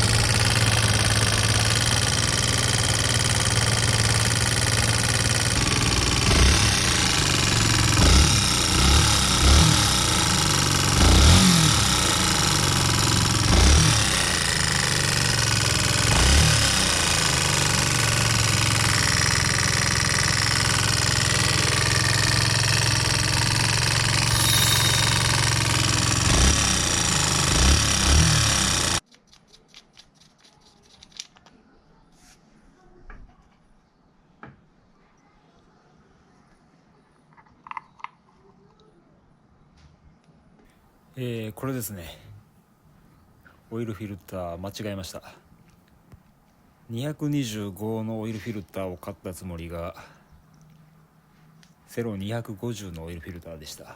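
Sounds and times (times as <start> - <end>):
engine knocking clatter: 0.0 - 29.0.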